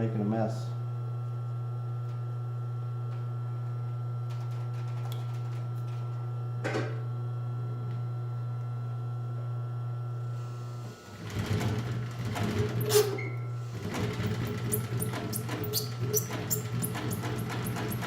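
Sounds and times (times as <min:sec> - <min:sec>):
sewing machine motor humming: 0:11.1 - 0:18.0
sewing machine stitching leather: 0:11.2 - 0:18.0.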